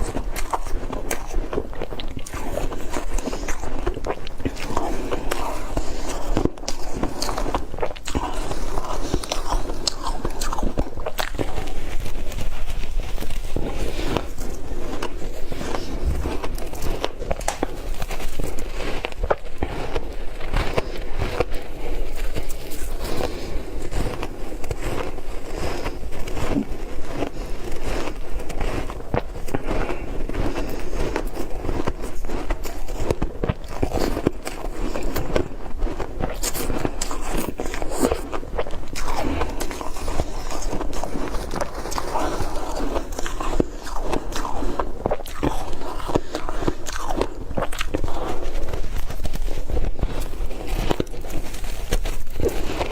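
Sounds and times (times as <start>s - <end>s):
ice being chewed: 0.0s - 52.9s.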